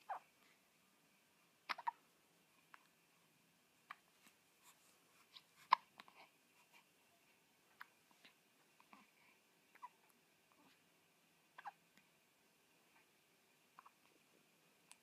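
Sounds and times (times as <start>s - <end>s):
baby hiccuping: 1.6s - 2.0s, 5.3s - 6.2s, 11.6s - 11.8s.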